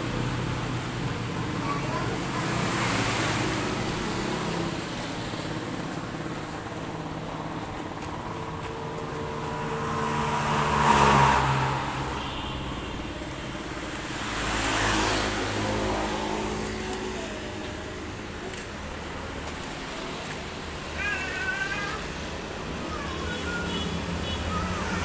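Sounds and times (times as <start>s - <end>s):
child whimpering: 20.8s - 25.0s.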